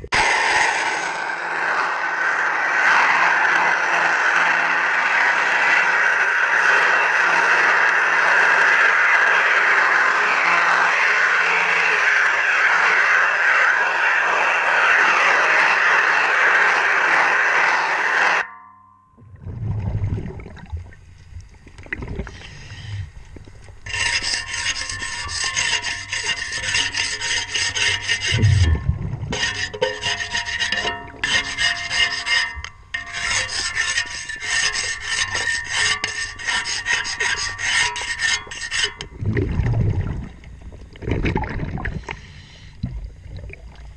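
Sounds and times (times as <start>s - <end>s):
low rumbling swells: 0.0s - 3.5s, 19.2s - 23.8s, 28.3s - 29.4s, 39.1s - 42.1s
loud steady rush: 0.0s - 18.5s, 28.2s - 31.4s
tool scraping propeller underwater: 0.2s - 43.5s.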